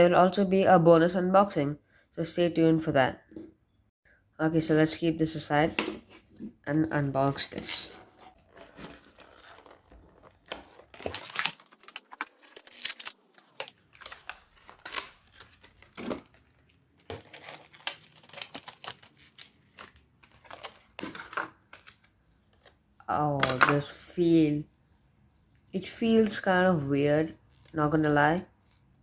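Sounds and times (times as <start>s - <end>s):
packaging tearing and crinkling: 8.3s - 22.0s.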